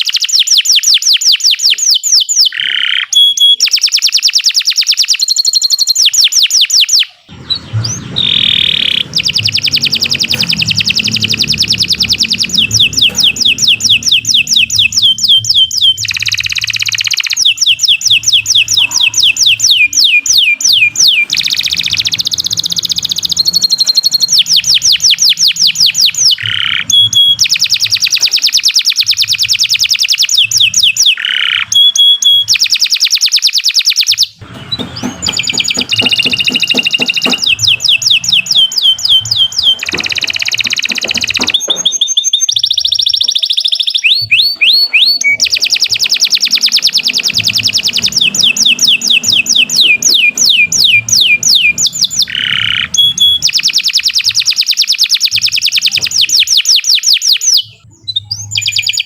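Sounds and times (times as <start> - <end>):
canary singing trills: 0.0 - 59.0
low background rumble: 7.3 - 19.8.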